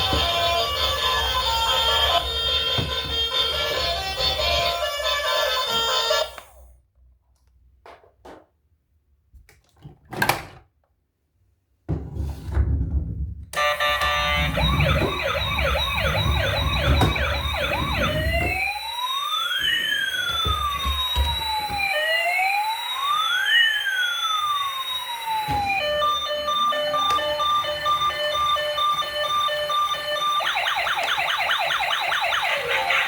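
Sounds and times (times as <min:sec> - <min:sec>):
toy electronic siren: 0:00.0 - 0:06.6, 0:13.6 - 0:33.0.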